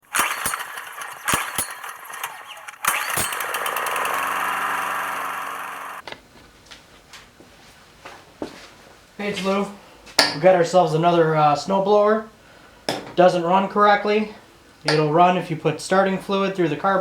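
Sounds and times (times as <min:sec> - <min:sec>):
small gasoline engine running: 0:00.0 - 0:06.0.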